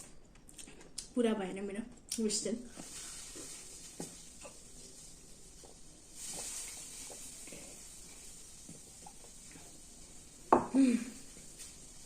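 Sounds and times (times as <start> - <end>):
chewing and small crunches: 0.0 - 1.2.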